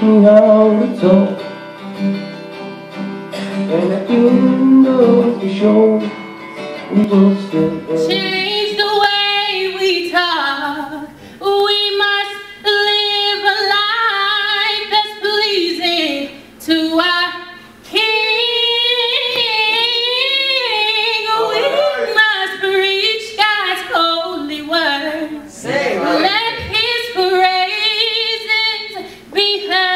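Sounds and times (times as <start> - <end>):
woman singing unaccompanied: 8.0 - 29.9.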